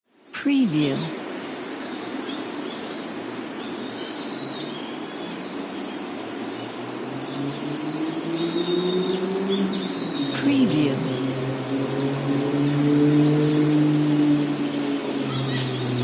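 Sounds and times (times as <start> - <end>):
small birds chirping: 0.1 - 16.0
traffic hum: 6.7 - 16.0
vehicle approaching: 11.0 - 16.0.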